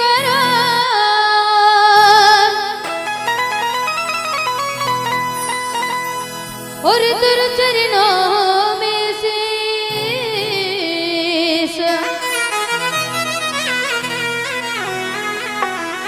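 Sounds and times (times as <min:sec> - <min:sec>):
ornamented melodic lead: 0:00.0 - 0:09.4, 0:10.0 - 0:16.0.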